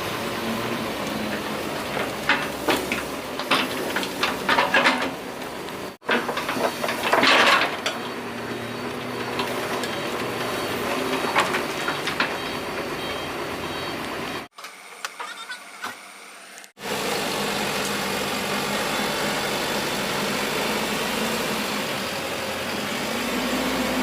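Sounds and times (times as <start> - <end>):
excavator engine running: 0.0 - 24.0
sharp knocks and clanks: 1.4 - 5.3, 6.0 - 8.2, 10.9 - 12.9.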